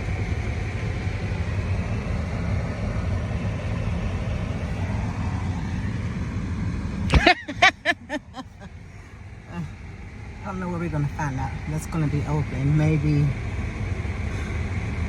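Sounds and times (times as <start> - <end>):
car engine rumble: 0.0 - 15.0
road noise: 0.0 - 15.0.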